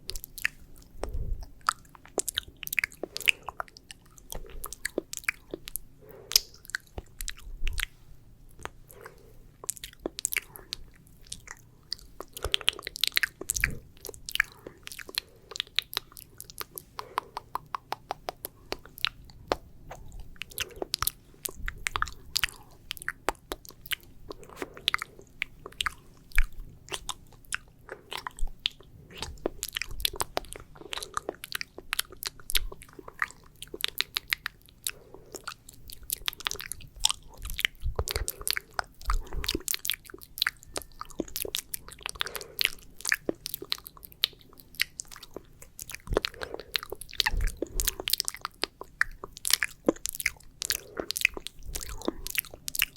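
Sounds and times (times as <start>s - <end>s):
wet mouth clicks and smacks: 0.0s - 52.9s.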